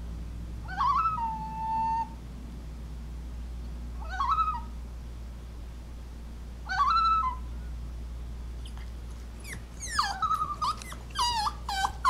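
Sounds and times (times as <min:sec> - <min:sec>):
dog whining and yipping: 0:00.7 - 0:02.2, 0:04.0 - 0:04.7, 0:06.7 - 0:07.5, 0:09.4 - 0:12.0.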